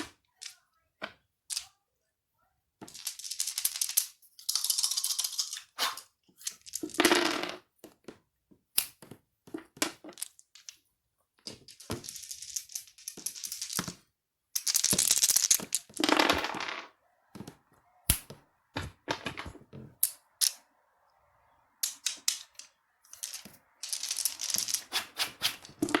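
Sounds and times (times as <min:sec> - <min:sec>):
dice clacking as they land: 0:00.0 - 0:01.6, 0:02.8 - 0:08.0, 0:11.5 - 0:14.0, 0:14.6 - 0:20.6, 0:21.8 - 0:26.0
dice rattling when shaken: 0:02.8 - 0:07.6, 0:11.5 - 0:14.0, 0:14.6 - 0:17.5, 0:18.8 - 0:20.6, 0:21.8 - 0:26.0.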